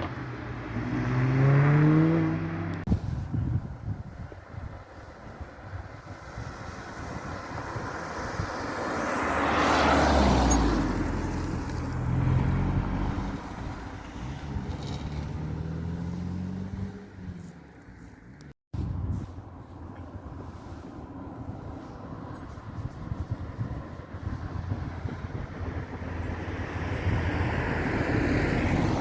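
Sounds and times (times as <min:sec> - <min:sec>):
car driving past: 0:00.0 - 0:02.9, 0:06.2 - 0:18.4.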